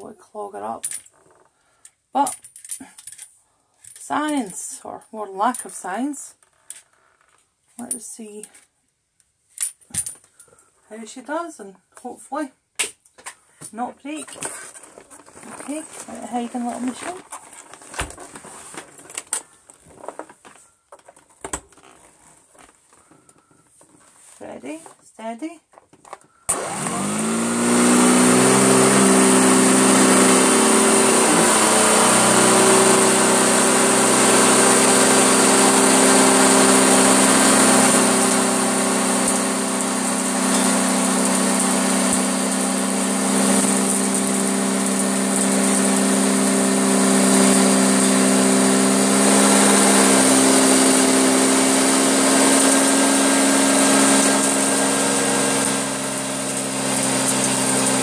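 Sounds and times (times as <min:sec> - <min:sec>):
vacuum cleaner running: 0:26.5 - 0:58.0.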